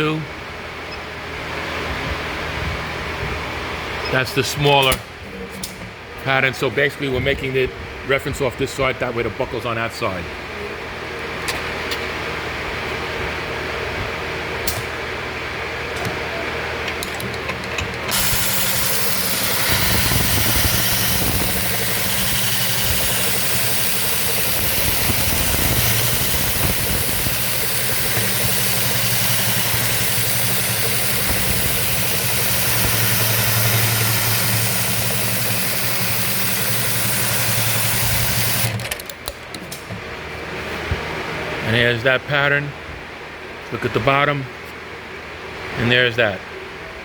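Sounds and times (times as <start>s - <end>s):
sewing machine clicks: 16.9s - 39.7s
sewing machine running: 17.0s - 39.1s.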